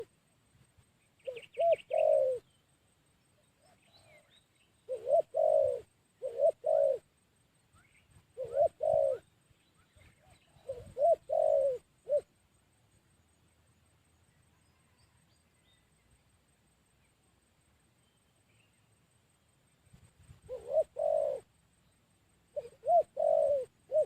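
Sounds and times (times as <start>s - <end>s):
small bird chirping: 0.8s - 24.0s
dove cooing: 1.2s - 2.6s, 3.6s - 7.2s, 8.1s - 9.3s, 10.0s - 12.4s, 20.4s - 21.5s, 22.5s - 24.0s.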